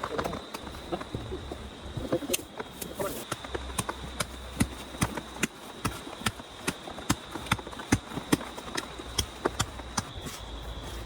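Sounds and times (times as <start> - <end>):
sharp evenly spaced knocks: 3.2 - 10.2.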